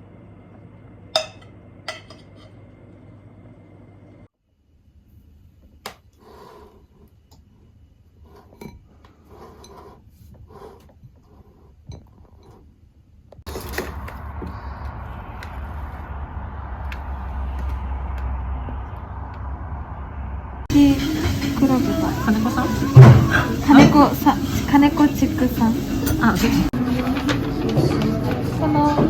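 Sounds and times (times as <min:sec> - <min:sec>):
dishes and cutlery clinking: 0:01.2 - 0:02.6, 0:08.5 - 0:09.8, 0:20.7 - 0:29.0
deep rumble: 0:13.5 - 0:26.8.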